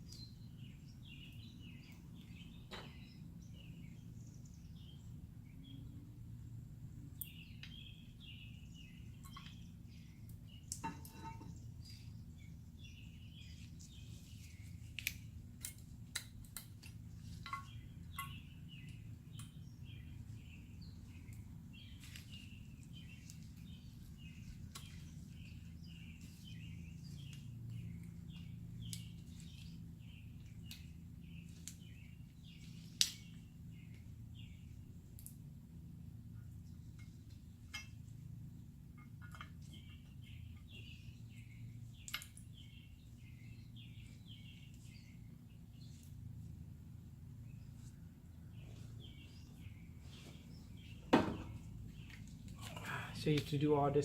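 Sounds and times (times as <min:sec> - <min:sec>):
birds chirping: 0:00.0 - 0:54.0
steady low hum: 0:00.0 - 0:54.0.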